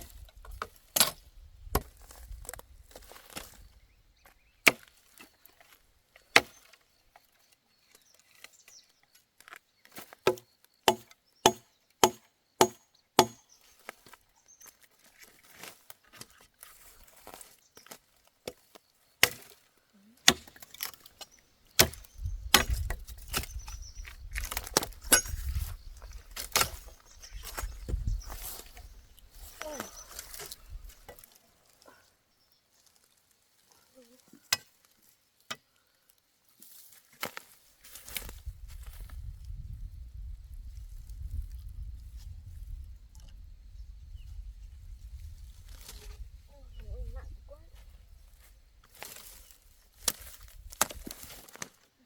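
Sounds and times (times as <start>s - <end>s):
axe chopping wood: 6.3s - 6.6s, 10.2s - 13.4s, 19.2s - 19.6s, 20.2s - 21.0s, 21.7s - 23.7s, 26.4s - 26.9s.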